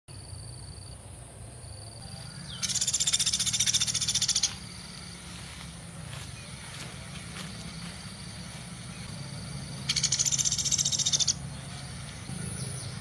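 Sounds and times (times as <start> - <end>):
low hum: 0.1 - 13.0
woodpecker rattling call: 2.5 - 5.0, 6.4 - 13.0.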